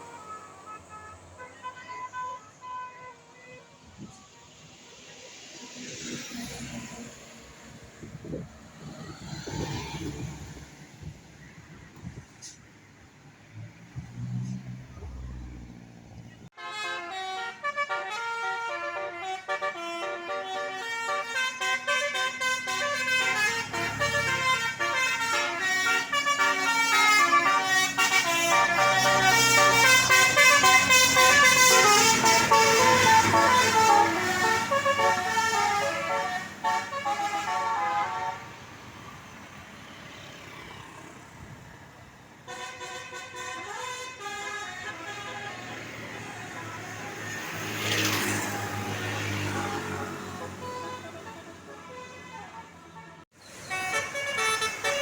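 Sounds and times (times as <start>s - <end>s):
musical air horn melody: 16.6s - 38.6s, 42.5s - 47.2s, 48.2s - 55.0s.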